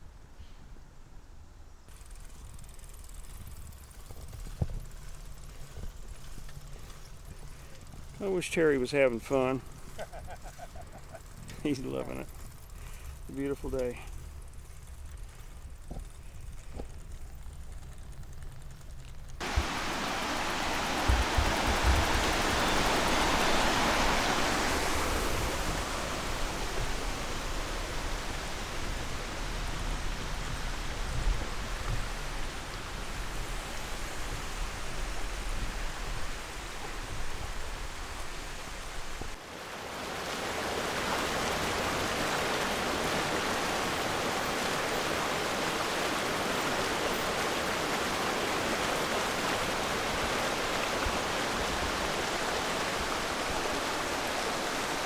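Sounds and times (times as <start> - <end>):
wind rushing over microphone: 19.4 - 39.4.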